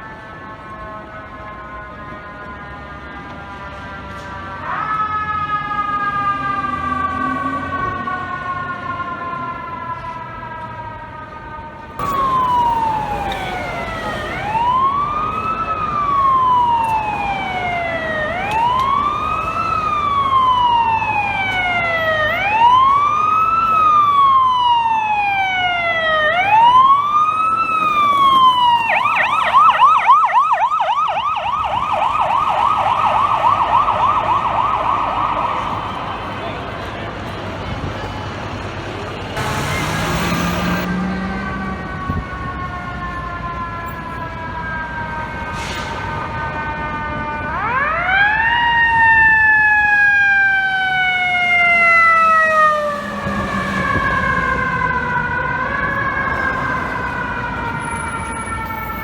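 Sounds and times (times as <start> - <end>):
electronic siren wail and yelp: 12.0 - 36.2, 46.7 - 59.0
siren winding down: 12.0 - 36.4, 39.4 - 59.0.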